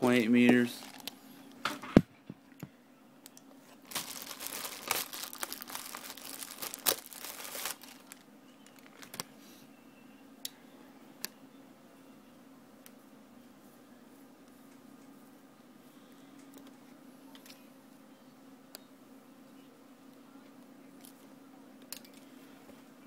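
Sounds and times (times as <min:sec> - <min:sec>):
plastic packaging crinkling: 0:00.0 - 0:01.2, 0:03.7 - 0:09.3.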